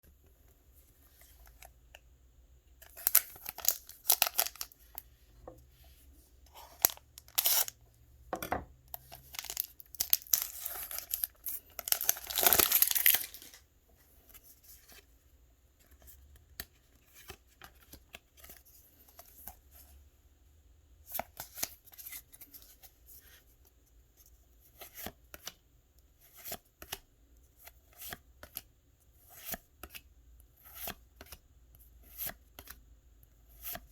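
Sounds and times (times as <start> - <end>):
foil wrapper crinkling and tearing: 2.9 - 4.8, 6.8 - 7.8, 9.2 - 13.6.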